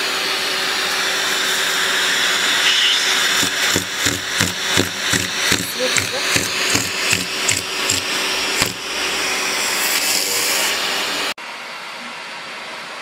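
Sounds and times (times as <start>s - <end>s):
vacuum cleaner running: 0.0s - 13.0s
quick knocks: 3.4s - 8.8s.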